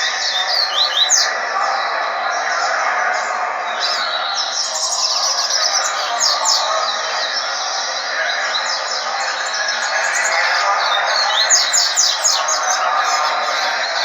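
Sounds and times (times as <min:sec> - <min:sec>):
other birds chattering: 0:00.0 - 0:14.0
steady background noise: 0:00.0 - 0:14.0.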